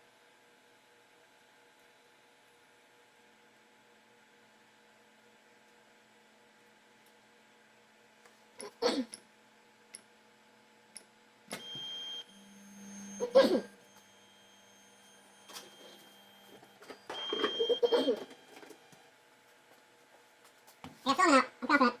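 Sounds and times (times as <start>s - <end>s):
stepper motors whining: 11.5s - 19.1s.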